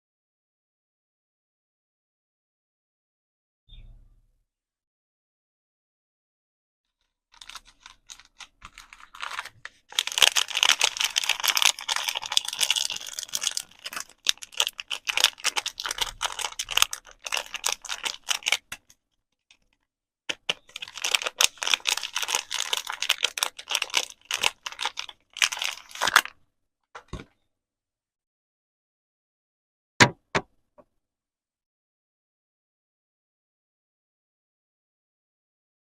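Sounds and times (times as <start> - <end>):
wrapping crinkling: 7.3 - 19.0, 20.3 - 26.3.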